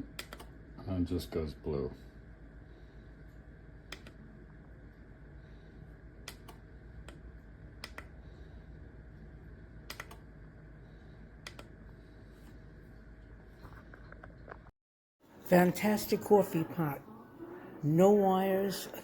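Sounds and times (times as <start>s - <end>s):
low steady hum: 0.0s - 14.7s
sharp clicks: 0.2s - 0.5s, 9.9s - 10.2s, 11.5s - 11.7s.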